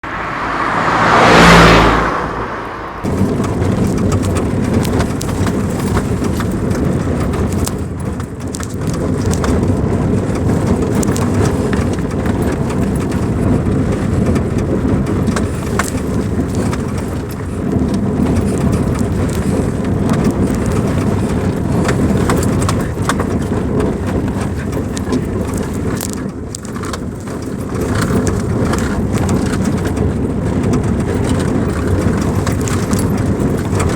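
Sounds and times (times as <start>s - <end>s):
loud swelling sound: 0.0s - 3.1s
tyre and engine rumble: 0.0s - 33.9s
car knocks and rattles: 3.0s - 33.9s.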